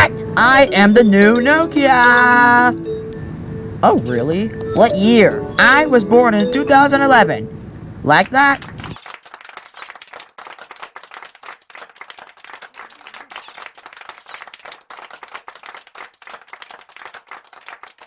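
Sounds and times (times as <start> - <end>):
applause: 8.7 - 18.0.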